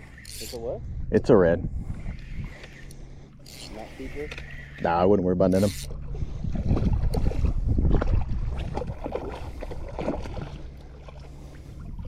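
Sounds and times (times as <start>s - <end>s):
shallow water splashing: 5.6s - 12.0s.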